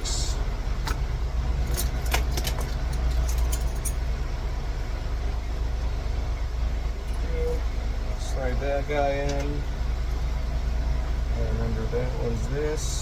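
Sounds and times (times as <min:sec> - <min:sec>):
steady low hum: 0:00.0 - 0:13.0
small metal clicks of keys and tools: 0:01.7 - 0:04.0.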